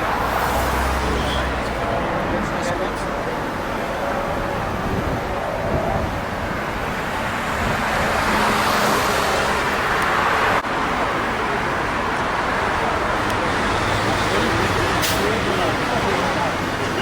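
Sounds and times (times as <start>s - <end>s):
vehicle passing: 0.0s - 10.9s
city street traffic: 0.0s - 17.0s.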